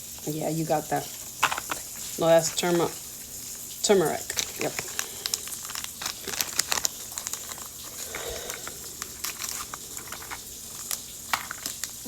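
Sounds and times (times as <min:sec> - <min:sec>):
plastic wrappers crinkling: 0:00.0 - 0:12.0
light clicks and crackles: 0:03.7 - 0:12.0.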